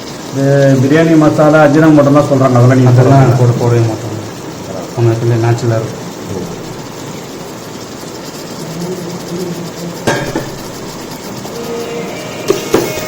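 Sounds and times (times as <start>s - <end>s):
onions and tomatoes frying in oil: 0.0s - 13.0s
ladle knocking against pot: 10.0s - 10.8s, 12.5s - 13.0s.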